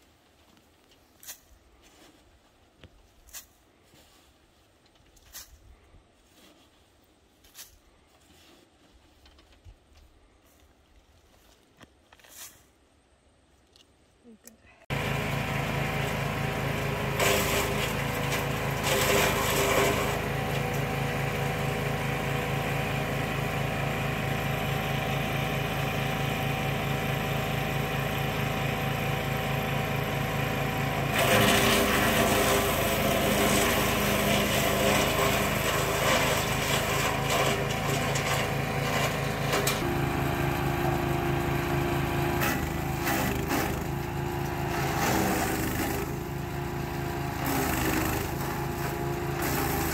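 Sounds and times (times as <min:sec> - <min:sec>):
branches grinding in chipper: 0:14.9 - 0:49.9
wood chipper engine running: 0:14.9 - 0:49.9.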